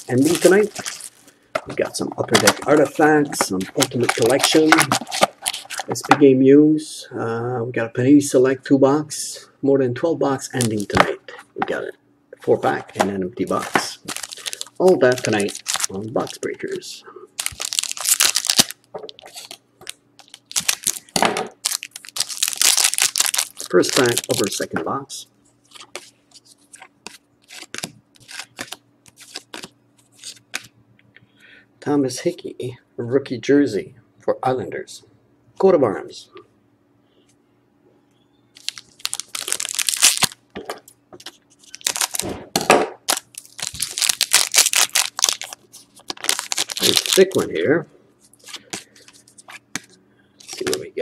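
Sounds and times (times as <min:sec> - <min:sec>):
crinkling and tearing packaging: 0:00.0 - 0:05.9, 0:10.6 - 0:11.0, 0:13.4 - 0:16.8, 0:17.4 - 0:24.8, 0:25.7 - 0:30.7, 0:38.6 - 0:40.4, 0:41.2 - 0:42.3, 0:43.0 - 0:47.5, 0:48.3 - 0:50.9.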